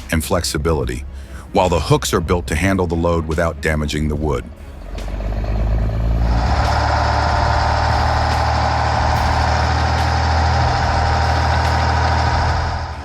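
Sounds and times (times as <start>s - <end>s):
truck engine running: 4.1s - 13.0s.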